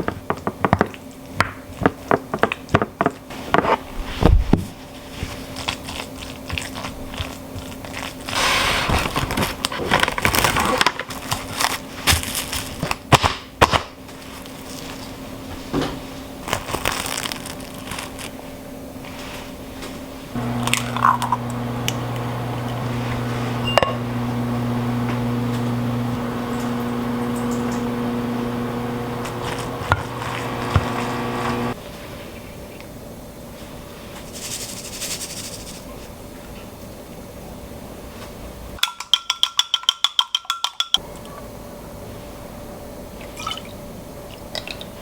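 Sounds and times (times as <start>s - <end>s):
microwave oven humming: 20.3s - 31.8s.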